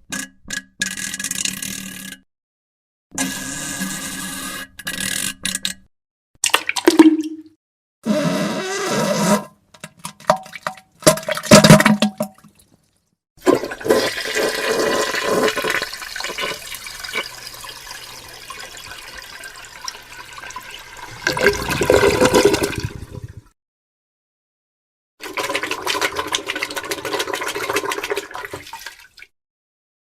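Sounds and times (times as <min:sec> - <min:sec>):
wet fart sounds: 0:13.4 - 0:17.2, 0:21.1 - 0:23.5
toilet flushing: 0:13.4 - 0:23.5, 0:25.2 - 0:29.2.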